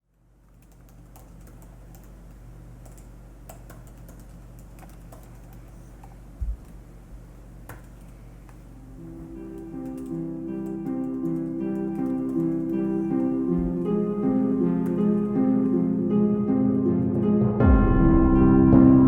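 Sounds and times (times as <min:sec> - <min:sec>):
typing on a keyboard: 0:00.5 - 0:06.2, 0:09.5 - 0:13.4.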